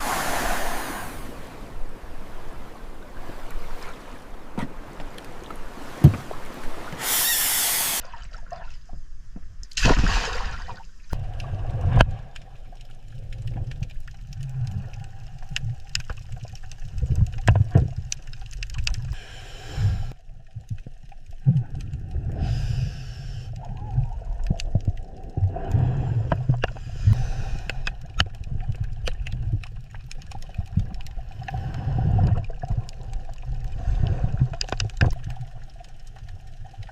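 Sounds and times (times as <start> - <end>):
water rushing: 0.0 - 8.1
muffled underwater rumbling: 11.1 - 36.9.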